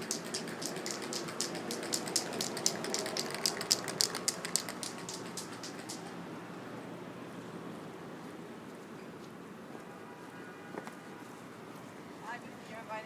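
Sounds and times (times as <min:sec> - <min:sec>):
rapid light ticks: 0:00.0 - 0:06.1
city street noise: 0:00.0 - 0:13.0.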